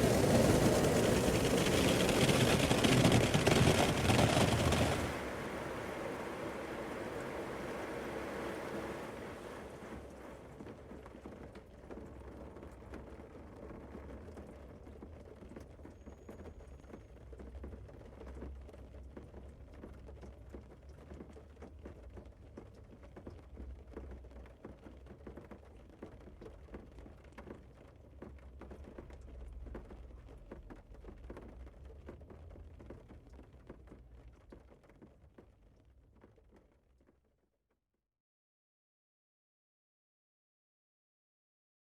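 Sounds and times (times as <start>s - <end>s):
water dripping and pattering: 0.0s - 5.6s, 17.2s - 37.2s.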